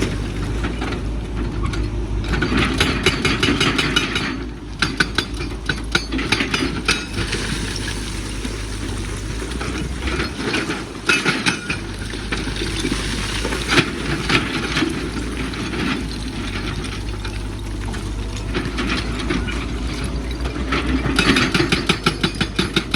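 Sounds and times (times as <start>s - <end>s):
excavator diesel engine: 0.0s - 22.9s.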